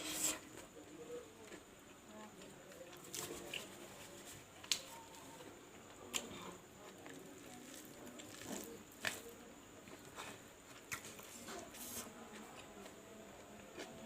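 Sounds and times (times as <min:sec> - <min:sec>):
chewing and mouth squishes: 0:09.9 - 0:13.0.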